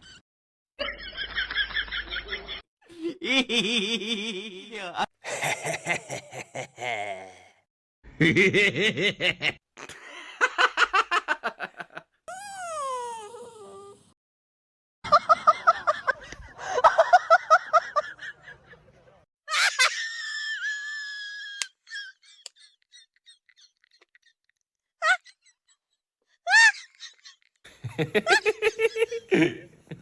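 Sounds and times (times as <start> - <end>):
person laughing: 2.3 - 7.5, 25.0 - 25.6, 26.5 - 30.0.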